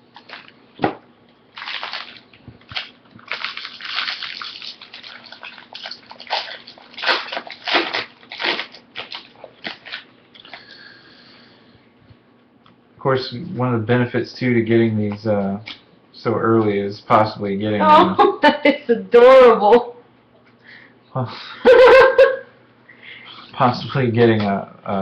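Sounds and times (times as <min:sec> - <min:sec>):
paper and foil crinkling: 0:00.1 - 0:00.5, 0:01.5 - 0:10.7.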